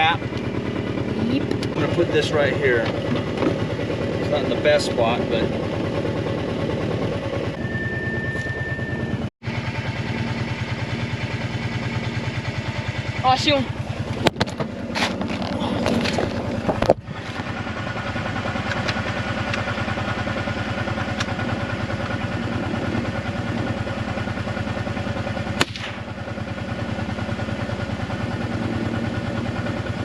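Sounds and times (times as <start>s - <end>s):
vehicle engine idling: 0.0s - 30.0s
sharp crack: 25.5s - 26.3s.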